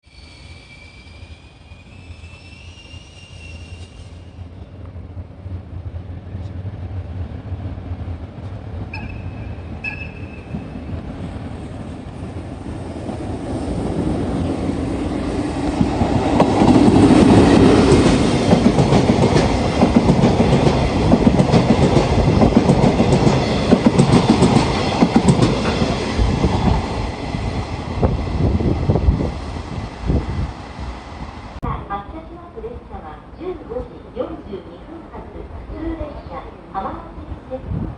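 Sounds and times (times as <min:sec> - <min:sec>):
freight train passing: 0:00.0 - 0:37.9
train horn toots: 0:08.9 - 0:10.7.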